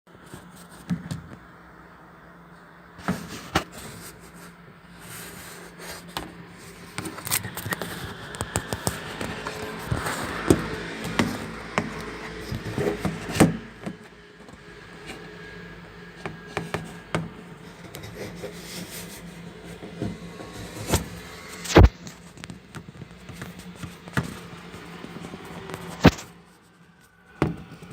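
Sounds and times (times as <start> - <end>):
washing machine motor hum: 2.9 - 21.6
knocks clicks and scraping: 5.8 - 15.3.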